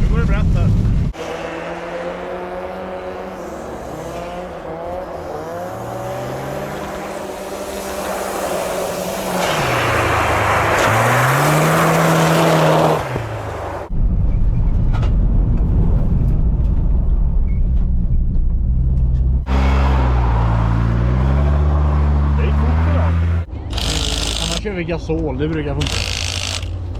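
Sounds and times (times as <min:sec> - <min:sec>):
deep muffled rumble: 0:00.0 - 0:01.2, 0:13.2 - 0:19.5
car engine revving: 0:00.0 - 0:13.9, 0:18.6 - 0:26.9
loud rushing noise: 0:01.1 - 0:14.2.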